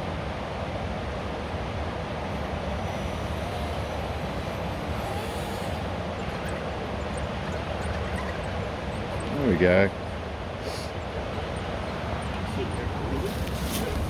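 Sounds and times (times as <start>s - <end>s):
electric motor and gears whirring: 2.2s - 10.2s, 11.0s - 14.0s.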